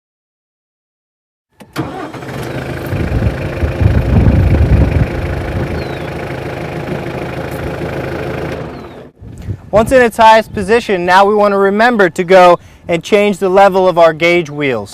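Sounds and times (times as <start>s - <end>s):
tractor diesel engine running: 1.6s - 9.2s.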